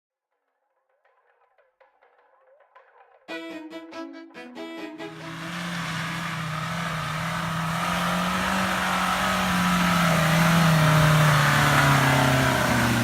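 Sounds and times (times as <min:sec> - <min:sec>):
car engine running: 0:05.1 - 0:13.0.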